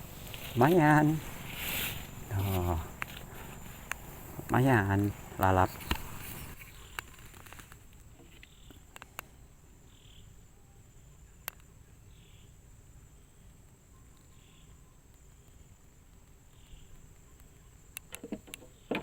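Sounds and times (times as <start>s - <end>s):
insect high-pitched drone: 0.0s - 7.0s, 9.8s - 15.8s
insect chirp: 0.0s - 19.0s.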